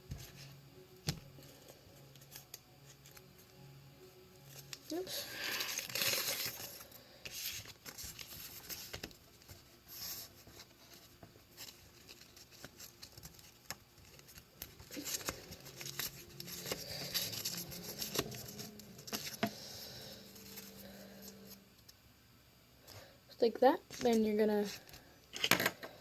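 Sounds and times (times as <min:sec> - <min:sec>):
paper rustling and crinkling: 0:04.5 - 0:21.6, 0:23.9 - 0:25.6.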